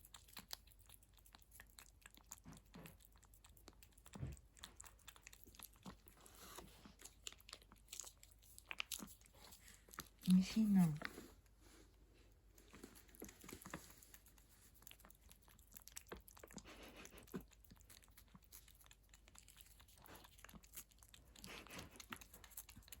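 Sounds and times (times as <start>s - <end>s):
cat licking wet smacking: 13.1s - 23.0s.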